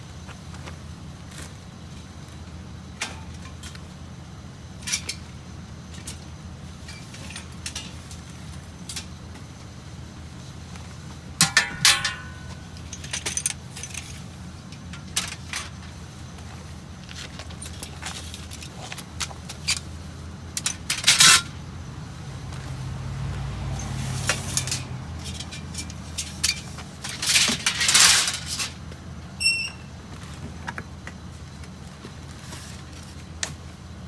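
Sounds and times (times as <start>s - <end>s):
vehicle engine humming: 0.0s - 34.0s
loose metal pieces rattling: 11.4s - 16.0s, 20.6s - 21.6s, 24.3s - 28.8s.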